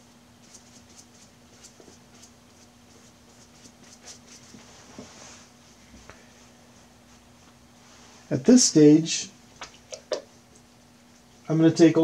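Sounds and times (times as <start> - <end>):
brush strokes on paper: 0.4 - 5.8, 6.4 - 8.4.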